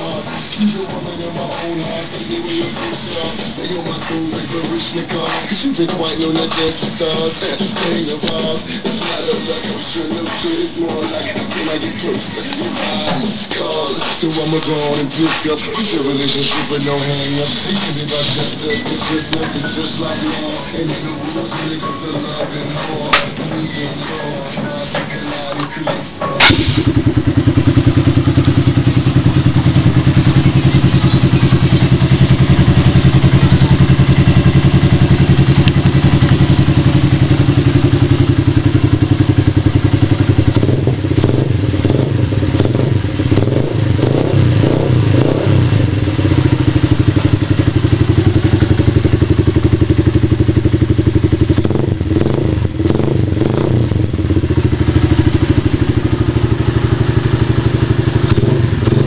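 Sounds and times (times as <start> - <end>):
motorcycle engine idling: 0.0 - 59.0.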